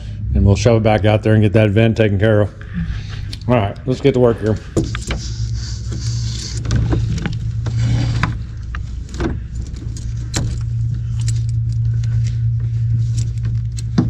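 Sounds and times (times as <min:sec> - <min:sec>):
steady low hum: 0:00.0 - 0:14.0
metal parts clinking: 0:03.2 - 0:14.0.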